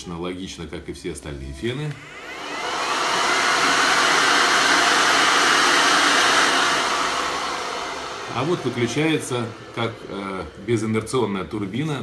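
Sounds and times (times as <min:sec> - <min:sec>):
hair dryer running: 0:01.9 - 0:12.0.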